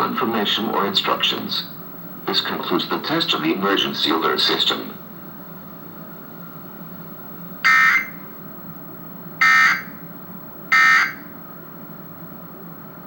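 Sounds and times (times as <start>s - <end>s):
shrill digital data squawks: 7.7s - 8.3s, 9.4s - 10.0s, 10.7s - 11.3s.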